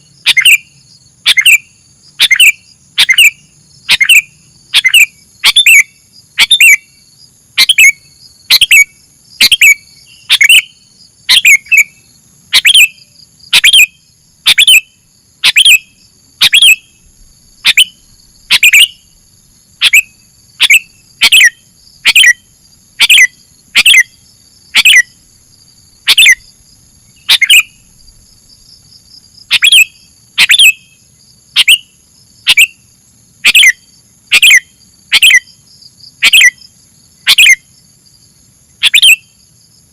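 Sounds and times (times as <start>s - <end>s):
bulbuls chirping: 0.0s - 19.2s, 19.8s - 25.2s, 26.0s - 28.2s, 29.4s - 31.0s, 31.6s - 32.8s
faint high-pitched whine: 0.0s - 39.9s.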